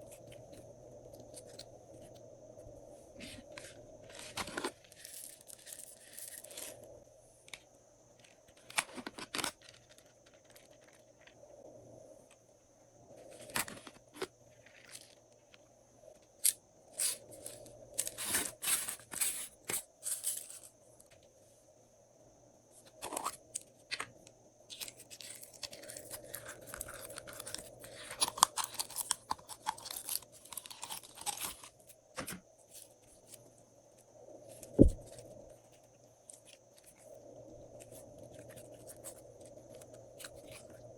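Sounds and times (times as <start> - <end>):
sharp thump: 34.8 - 35.0.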